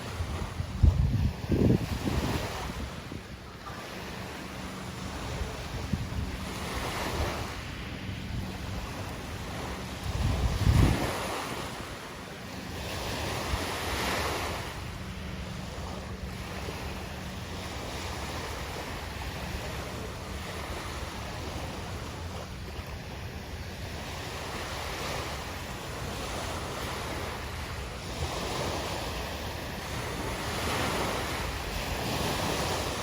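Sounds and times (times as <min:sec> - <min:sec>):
wind buffeting microphone: 0:00.0 - 0:12.1
waves washing onto shore: 0:00.0 - 0:33.0.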